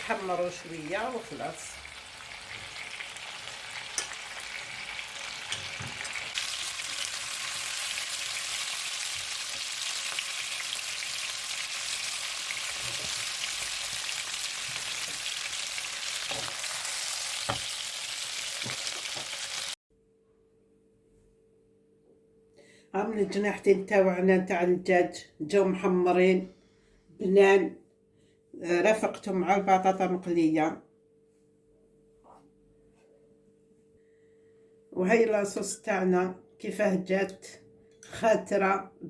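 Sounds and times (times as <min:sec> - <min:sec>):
chicken wings sizzling in oil: 0:00.0 - 0:19.8.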